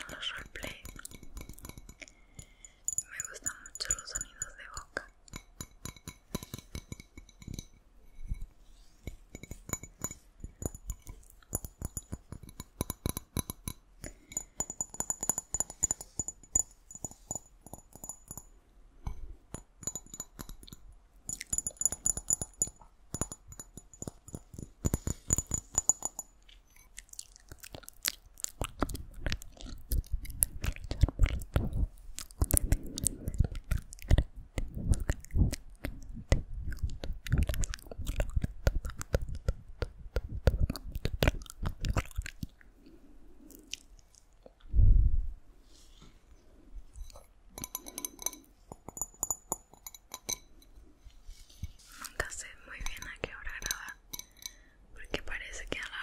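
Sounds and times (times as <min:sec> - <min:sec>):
wet mouth sounds: 0:00.0 - 0:06.9, 0:26.6 - 0:44.8
tapping on glass: 0:00.0 - 0:26.4, 0:47.0 - 0:50.6.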